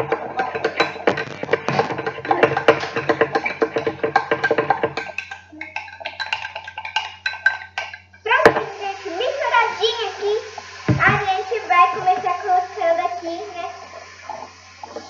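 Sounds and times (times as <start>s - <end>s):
spoon stirring in a cup: 0.0s - 8.2s.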